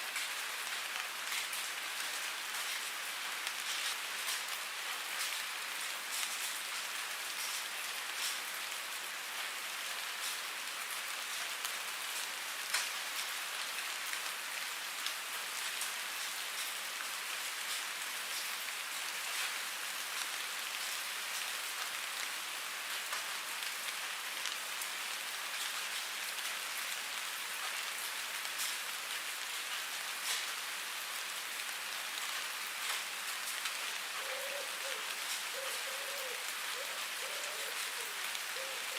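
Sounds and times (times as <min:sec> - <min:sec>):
steady rain hiss: 0:00.0 - 0:38.9.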